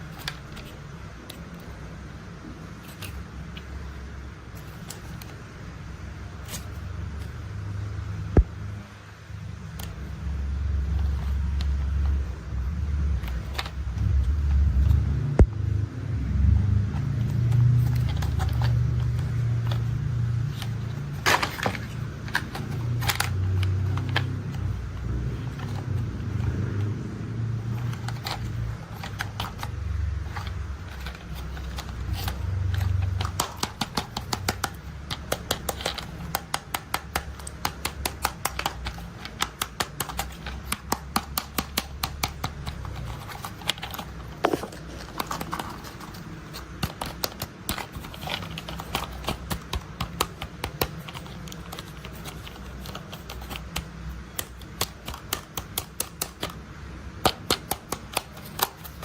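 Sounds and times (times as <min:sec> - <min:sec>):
plastic toys clicking and tapping: 0:17.3 - 0:26.6, 0:27.6 - 0:59.0.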